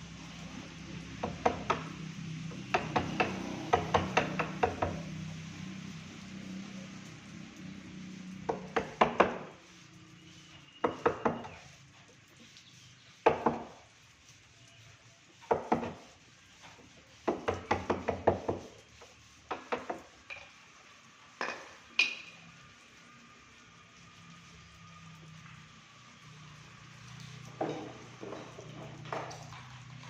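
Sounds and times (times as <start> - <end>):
hammer tapping on wood: 2.7 - 5.0, 8.5 - 9.5, 15.5 - 16.0, 17.2 - 18.6.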